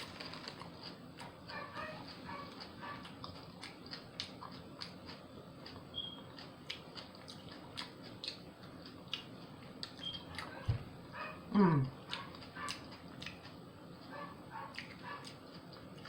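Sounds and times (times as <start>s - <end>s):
wet mouth chewing: 2.0s - 10.6s, 11.9s - 13.6s, 14.6s - 16.0s.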